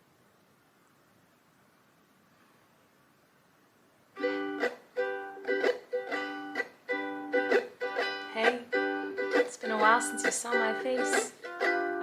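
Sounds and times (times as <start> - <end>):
ukulele strumming: 4.2 - 12.0.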